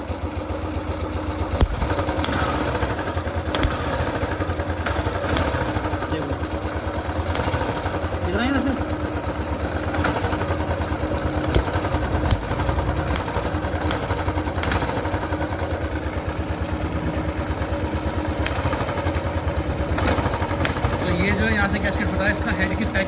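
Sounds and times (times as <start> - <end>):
motorcycle engine idling: 0.0 - 23.0
sharp pat-pat puff: 1.5 - 6.1, 7.2 - 8.2, 9.8 - 15.8, 18.3 - 19.2, 20.0 - 21.0.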